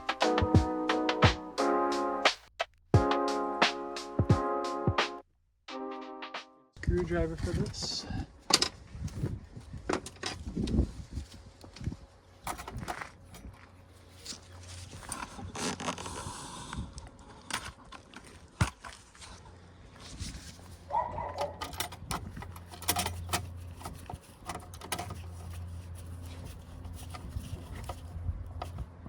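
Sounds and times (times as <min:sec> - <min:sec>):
screwdriver and metal parts clattering: 0:21.2 - 0:28.0.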